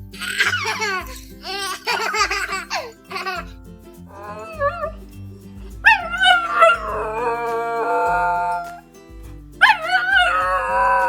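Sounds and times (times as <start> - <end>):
background music: 0.0 - 11.0
dog howling: 4.1 - 5.0, 5.9 - 8.8, 9.6 - 11.0.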